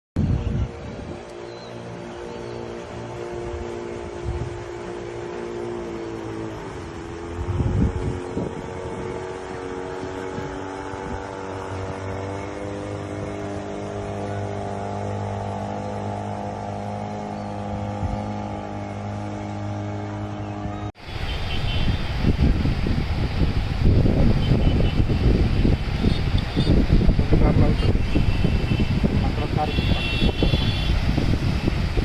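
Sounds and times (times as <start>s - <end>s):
engine running: 0.2s - 32.0s
loud rough rumbling: 2.4s - 32.0s.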